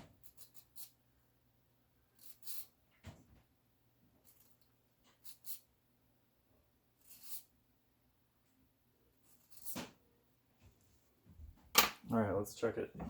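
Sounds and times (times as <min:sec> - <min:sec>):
needle file rasping on metal: 0:00.2 - 0:01.0, 0:02.2 - 0:02.7, 0:07.0 - 0:07.5.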